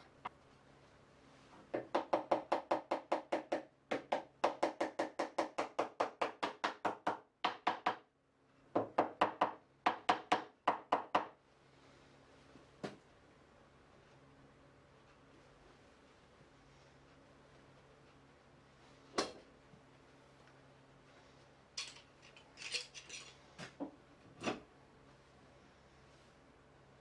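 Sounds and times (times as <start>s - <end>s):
hand tool knocking on wood: 1.7s - 8.0s.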